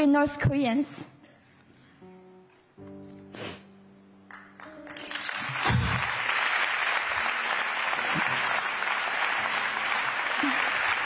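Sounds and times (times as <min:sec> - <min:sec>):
large audience applauding: 0:04.3 - 0:11.0.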